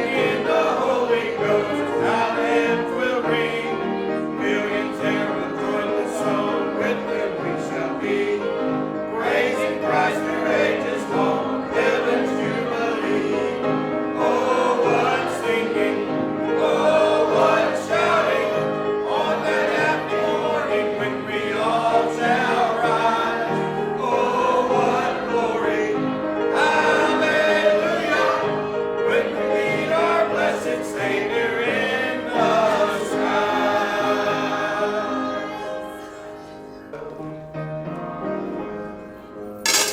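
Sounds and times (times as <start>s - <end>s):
congregation singing a hymn: 0.0s - 39.7s.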